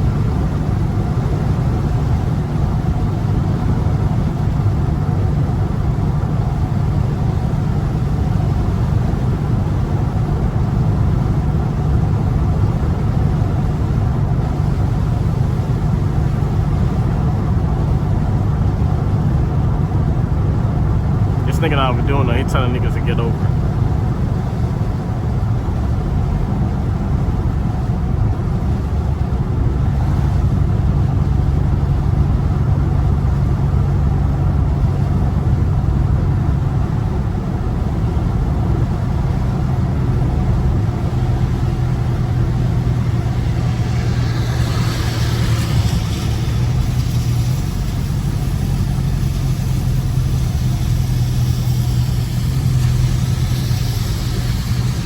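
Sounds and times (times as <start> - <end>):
car engine droning: 0.0 - 55.0
high hiss: 41.2 - 55.0.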